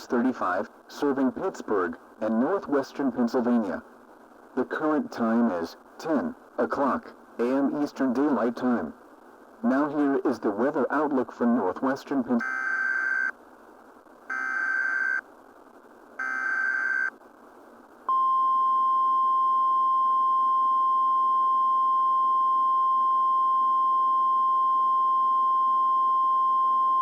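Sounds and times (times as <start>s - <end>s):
radio hiss: 0.0s - 18.0s
harsh digital data buzzing: 12.4s - 13.3s, 14.3s - 15.2s, 16.2s - 17.1s
piercing warning alarm tone: 12.4s - 13.3s, 14.3s - 15.2s, 16.2s - 17.1s.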